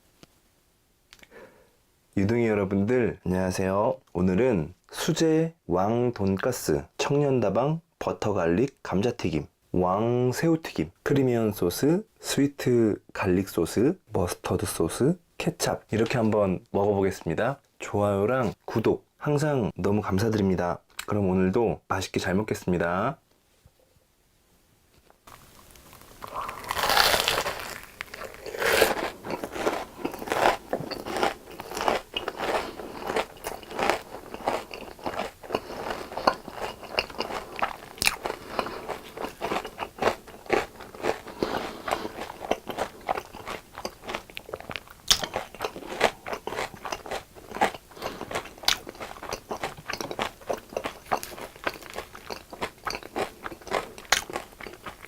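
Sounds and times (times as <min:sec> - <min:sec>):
crunchy food chewing: 0:25.3 - 0:55.0.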